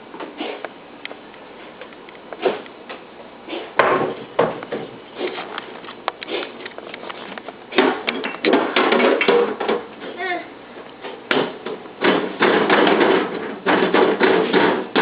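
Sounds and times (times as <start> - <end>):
bumps knocks and rustling: 3.8 - 10.2, 11.0 - 15.0
clattering bursts: 11.3 - 15.0.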